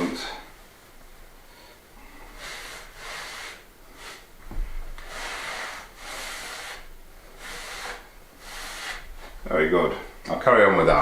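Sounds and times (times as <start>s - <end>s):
dull thump: 4.4s - 5.0s.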